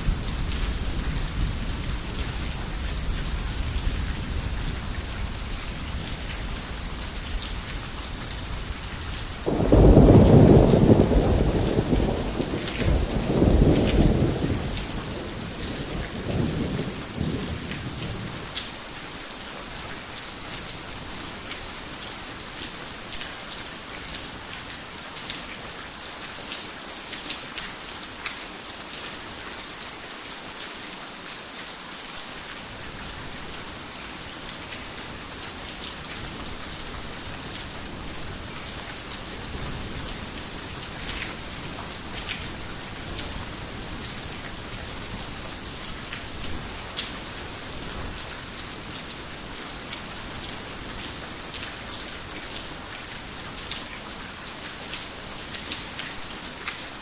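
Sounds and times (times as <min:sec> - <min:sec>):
heavy rain hissing: 0:00.0 - 0:23.5.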